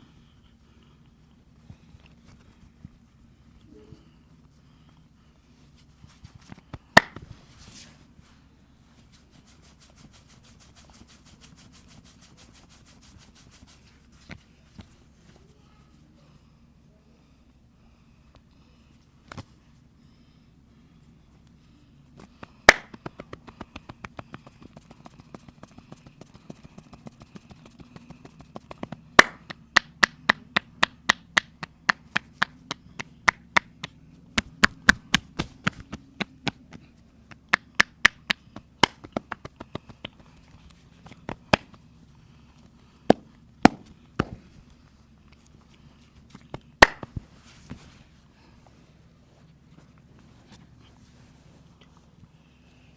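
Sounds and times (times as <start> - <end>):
claps and slaps: 6.7 - 7.2, 22.4 - 36.6, 37.3 - 40.2, 46.5 - 47.2
hand strikes on body: 6.7 - 7.2, 22.4 - 30.4, 37.5 - 40.2, 43.1 - 44.5, 46.8 - 47.3.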